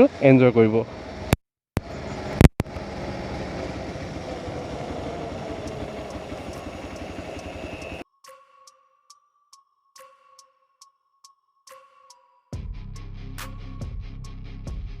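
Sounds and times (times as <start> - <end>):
motorcycle engine idling: 1.8 - 8.0.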